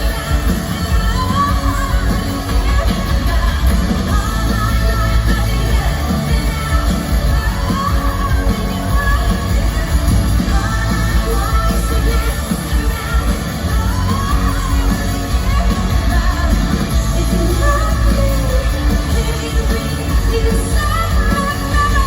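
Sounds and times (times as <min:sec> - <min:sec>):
lead singer singing: 0:00.0 - 0:22.0
live pop-rock band: 0:00.0 - 0:22.0.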